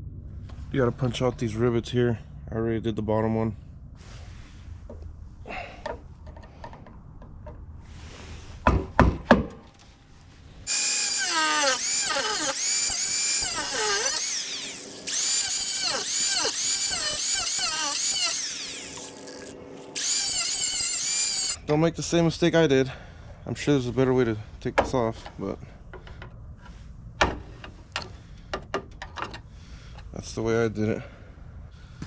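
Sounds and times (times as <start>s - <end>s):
power drill whining: 10.7s - 21.6s.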